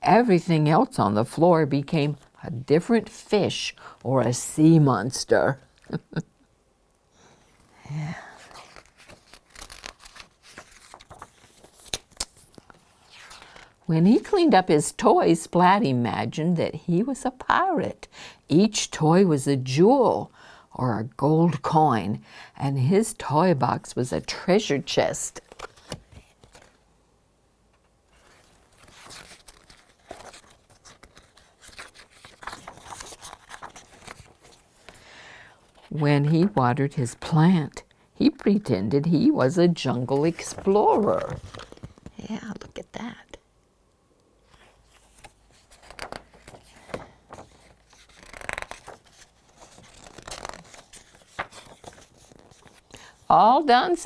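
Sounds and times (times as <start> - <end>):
paper pages rustling and crinkling: 8.4 - 13.8, 25.3 - 26.9, 28.1 - 35.1, 40.0 - 42.3, 44.4 - 53.3.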